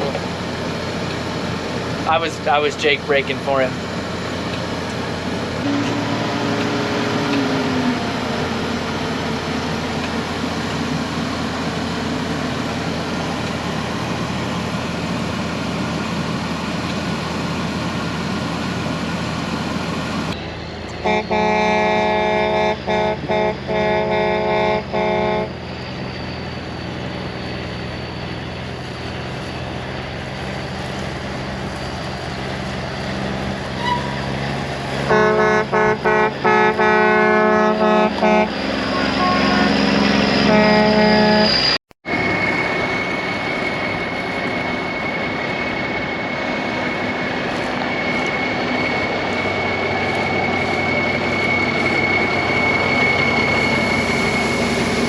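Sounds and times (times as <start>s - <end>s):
truck engine and road noise: 0.0s - 55.0s
truck air horn honks: 5.6s - 7.2s, 21.0s - 25.5s, 35.1s - 39.8s, 40.4s - 41.5s.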